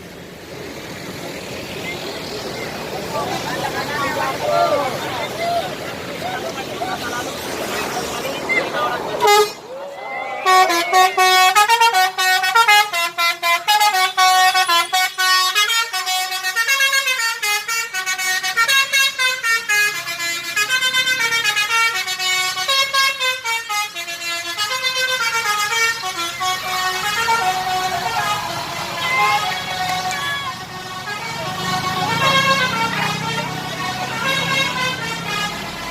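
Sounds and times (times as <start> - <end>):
multi-tone bus horn tune: 9.2 - 9.7, 10.4 - 35.9.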